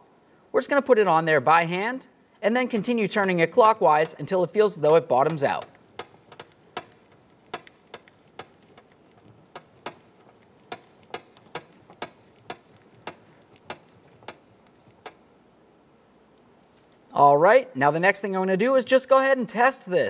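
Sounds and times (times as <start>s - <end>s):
door lock knob clicking: 5.3s - 15.2s.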